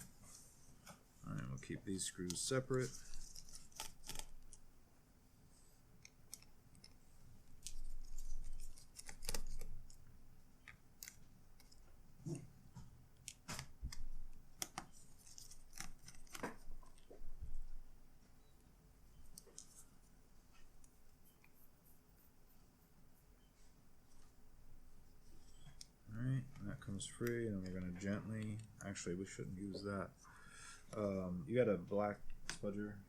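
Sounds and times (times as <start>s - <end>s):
small clicks and taps on laptop: 12.7s - 17.2s.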